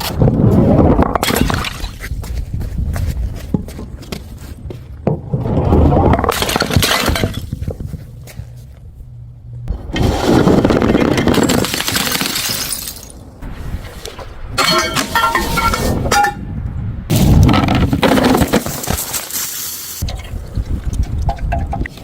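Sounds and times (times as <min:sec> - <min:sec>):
glass bottles smashing: 0:06.3 - 0:07.5, 0:10.6 - 0:13.2, 0:14.6 - 0:16.4
glass pieces clinking: 0:11.3 - 0:13.2, 0:14.6 - 0:16.4.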